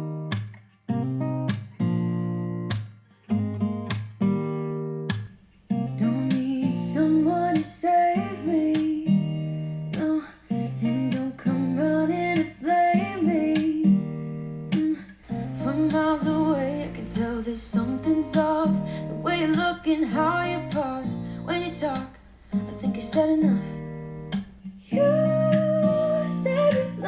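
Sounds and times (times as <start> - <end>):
strummed acoustic guitar: 0.0 - 27.0
woman singing: 6.0 - 27.0.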